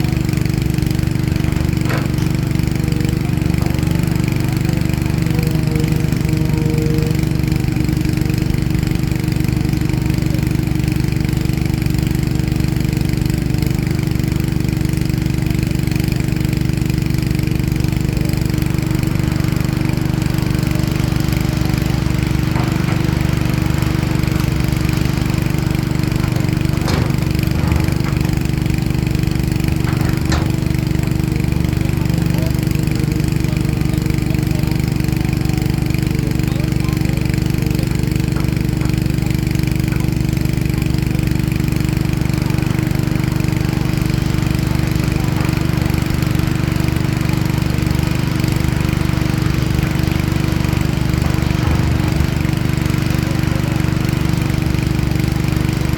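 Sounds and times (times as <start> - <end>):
excavator diesel engine running: 0.0 - 55.9
faint knocks: 14.7 - 32.8, 41.8 - 55.9.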